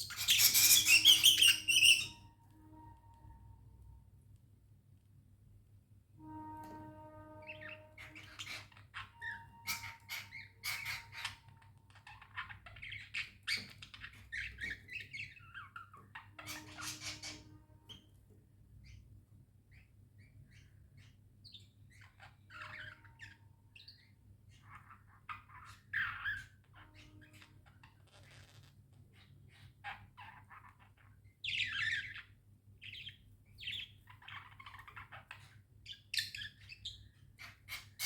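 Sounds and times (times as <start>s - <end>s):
budgerigars chirping and chattering: 0.0s - 2.3s, 7.5s - 18.0s, 19.7s - 28.5s, 29.2s - 38.0s.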